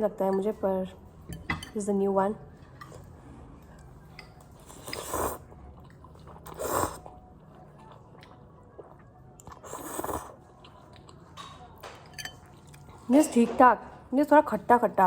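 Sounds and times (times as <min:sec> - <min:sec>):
slurping and chewing noodles: 0:04.6 - 0:07.2, 0:07.8 - 0:11.2.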